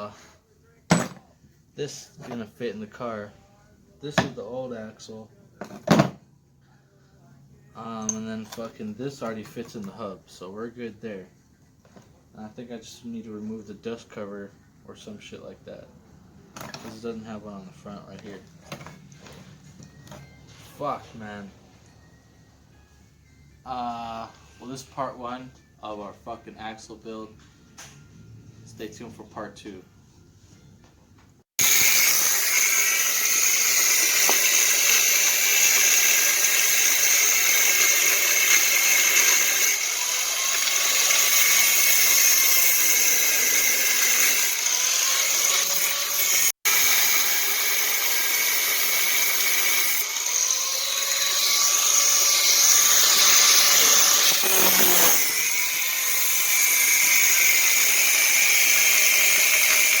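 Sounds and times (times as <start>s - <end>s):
power grinder grinding steel: 31.6s - 60.0s.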